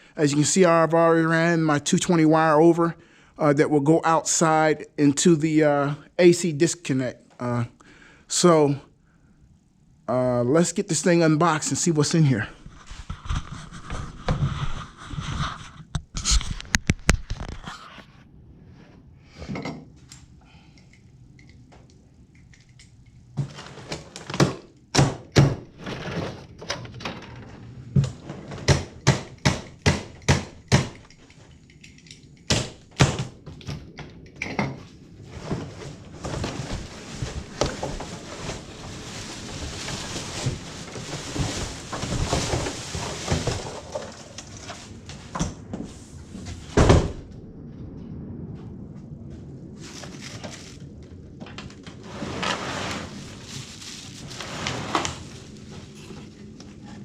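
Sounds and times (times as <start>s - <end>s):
cardboard and packing rustling: 35.2s - 47.2s, 49.7s - 57.0s.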